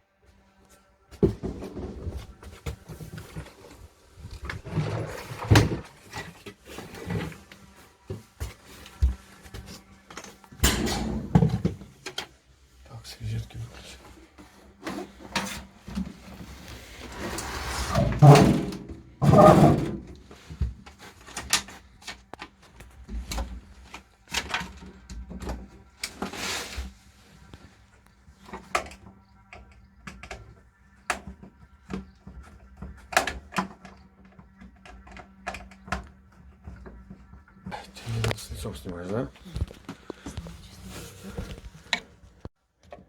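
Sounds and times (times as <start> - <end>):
knocks and clatter on washing machine: 10.6 - 12.0, 18.0 - 20.8
scraping: 15.0 - 20.5.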